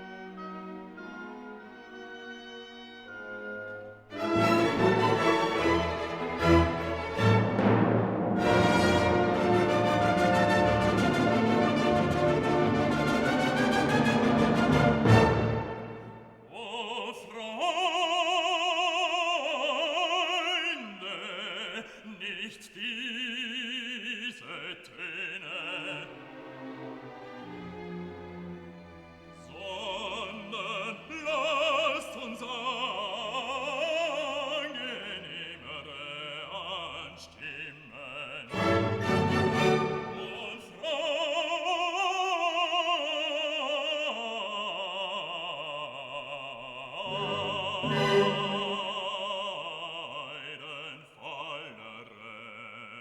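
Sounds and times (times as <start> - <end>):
operatic singing: 0.0 - 53.0
sustained strings: 47.0 - 49.5.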